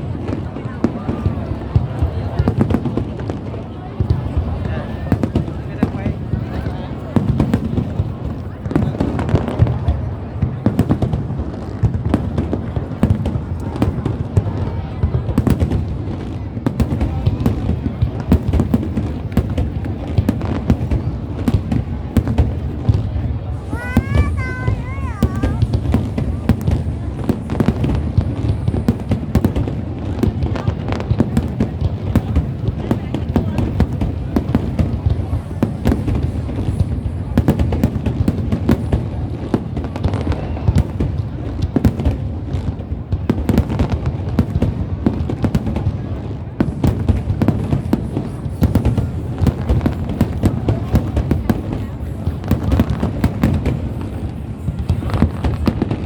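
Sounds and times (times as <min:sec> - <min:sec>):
fireworks bangs and crackles: 0:00.0 - 0:56.0
fireworks bangs: 0:16.7 - 0:31.5.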